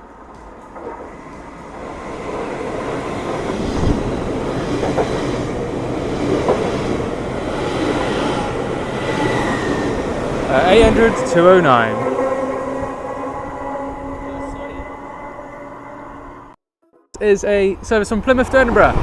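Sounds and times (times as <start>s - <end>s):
train wheels clicking: 0.0s - 13.0s
train rumbling past: 0.0s - 16.6s.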